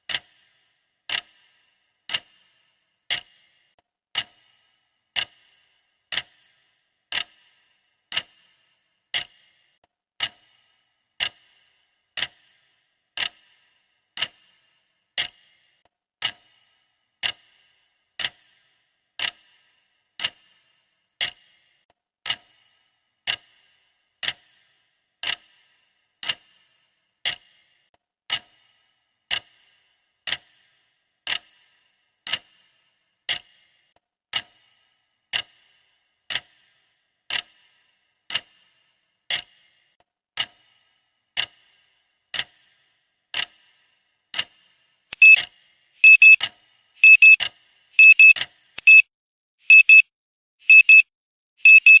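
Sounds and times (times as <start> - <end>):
clock ticking: 0.0 - 49.0, 50.7 - 52.0
digital alarm beeping: 45.2 - 45.4, 46.0 - 46.4, 47.0 - 47.4, 48.0 - 49.1, 49.7 - 50.1, 50.7 - 51.1, 51.7 - 52.0.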